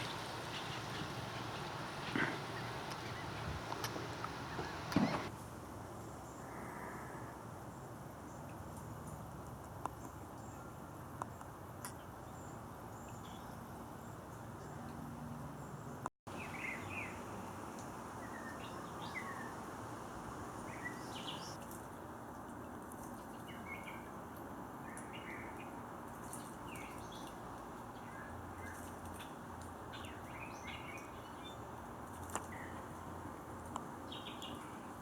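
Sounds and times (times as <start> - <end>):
bird chirps and calls: 0.0 - 5.3.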